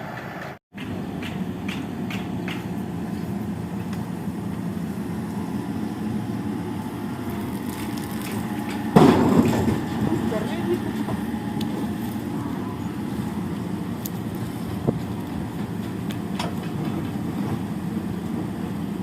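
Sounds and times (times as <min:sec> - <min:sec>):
excavator diesel engine running: 0:00.0 - 0:19.0
loud crash: 0:09.0 - 0:10.2.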